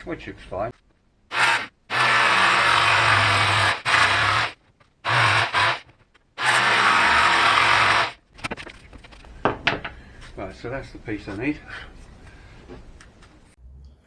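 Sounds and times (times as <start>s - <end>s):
power saw cutting acrylic: 1.3s - 8.2s.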